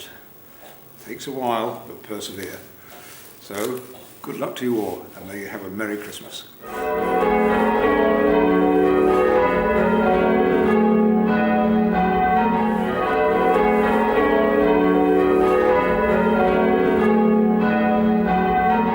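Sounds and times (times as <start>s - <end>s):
church bells change ringing: 6.6s - 18.9s.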